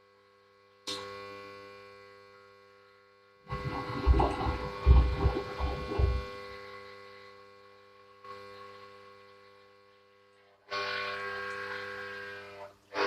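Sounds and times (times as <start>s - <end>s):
water pump electric hum: 0.0s - 13.0s
low rumbling: 3.5s - 6.3s.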